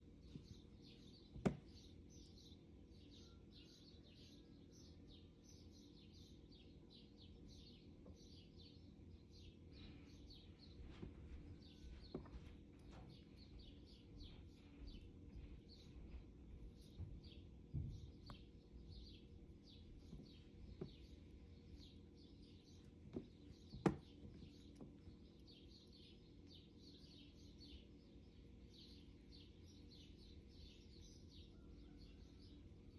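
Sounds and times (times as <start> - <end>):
small bird chirping: 0.0 - 32.9
soft knocks: 1.3 - 1.7.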